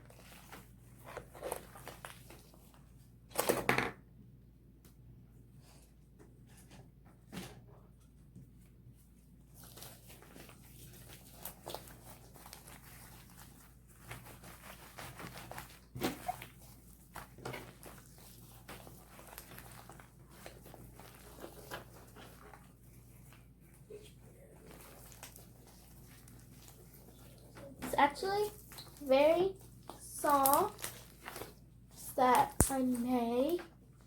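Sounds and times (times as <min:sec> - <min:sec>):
hands squishing slime: 0:00.0 - 0:02.8, 0:09.4 - 0:33.6.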